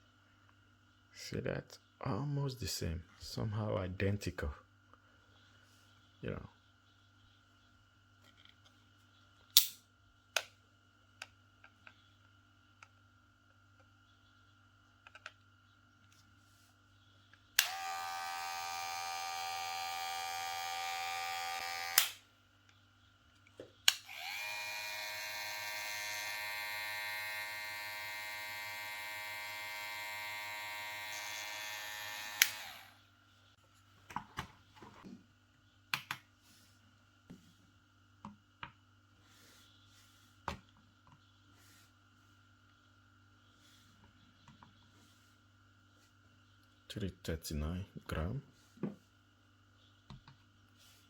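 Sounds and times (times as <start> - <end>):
hair clipper running: 17.6 - 22.2, 23.9 - 33.0.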